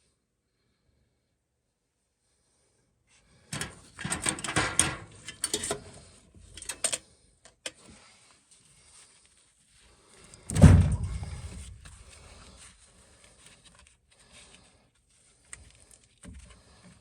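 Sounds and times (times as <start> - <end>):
objects clattering and knocking: 3.6 - 6.0, 10.5 - 12.0.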